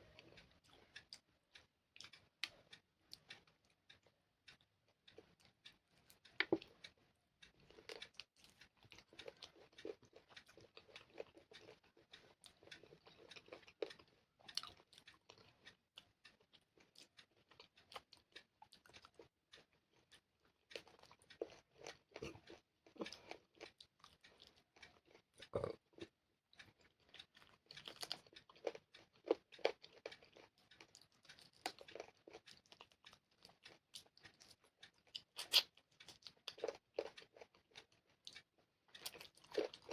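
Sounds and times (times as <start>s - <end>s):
wet chewing: 6.1s - 6.9s, 7.6s - 39.9s
lip smacks: 35.4s - 35.7s.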